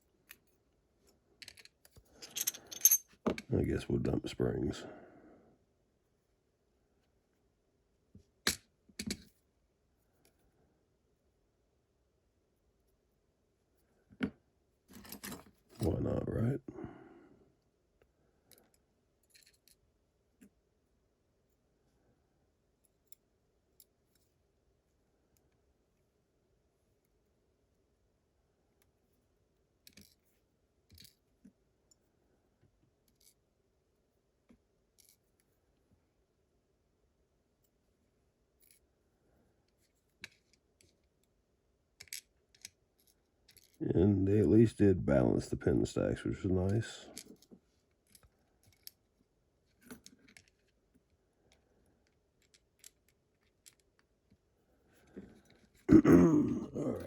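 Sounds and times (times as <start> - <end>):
faint clicks of metal parts: 0.1 - 3.5, 14.0 - 16.0, 18.0 - 20.6, 29.8 - 33.4, 34.4 - 35.6, 38.5 - 41.4, 42.0 - 43.8, 47.0 - 55.9
small metal parts clicking: 1.4 - 3.0, 47.2 - 49.0, 52.0 - 54.0
light scrapes of metal parts: 14.9 - 15.7.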